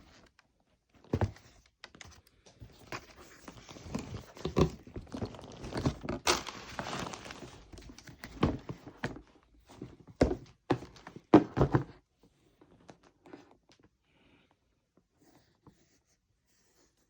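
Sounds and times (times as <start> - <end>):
packaging rustling and crinkling: 2.6 - 9.2
soft knocks and thuds: 8.2 - 12.0.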